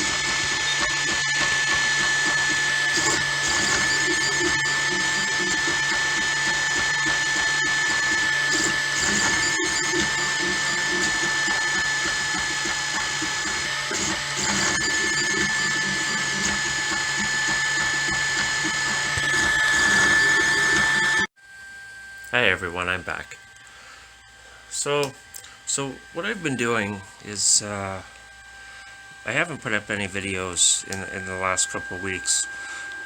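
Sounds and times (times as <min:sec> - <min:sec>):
mechanical whirring and clicking: 0:00.0 - 0:21.3
stepper motor whine: 0:00.0 - 0:33.0.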